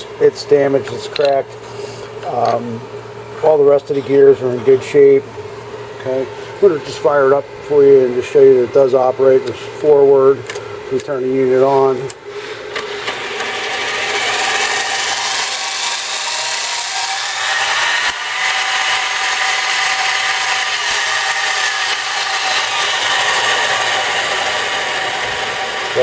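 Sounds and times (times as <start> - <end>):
bench lathe motor whine: 12.7 - 26.0.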